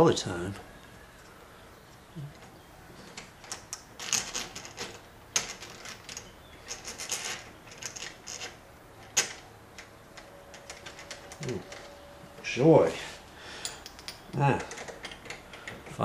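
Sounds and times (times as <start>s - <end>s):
metal lock clicks and scrapes: 13.7s - 15.9s.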